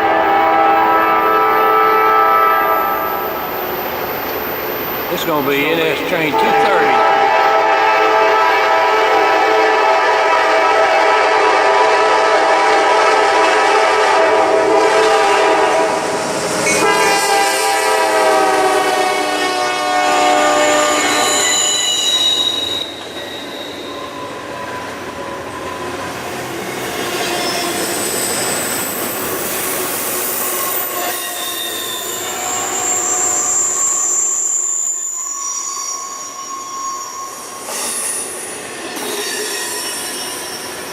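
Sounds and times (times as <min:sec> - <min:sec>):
locomotive air horn chord: 0:00.0 - 0:03.1, 0:05.8 - 0:16.0, 0:16.7 - 0:21.8
rumble of train cars: 0:00.0 - 0:40.9
train wheels squealing: 0:02.6 - 0:07.0, 0:16.6 - 0:16.9, 0:20.6 - 0:40.9.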